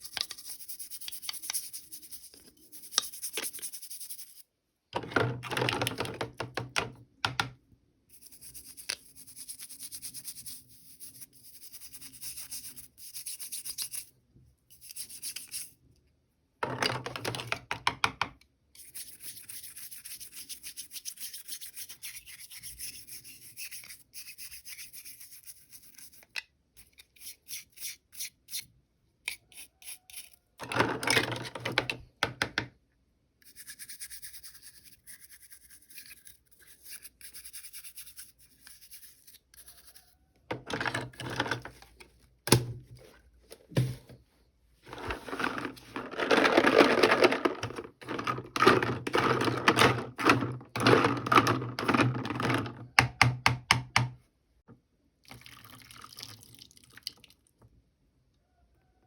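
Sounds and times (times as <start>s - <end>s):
packaging rustling: 44.9s - 52.4s.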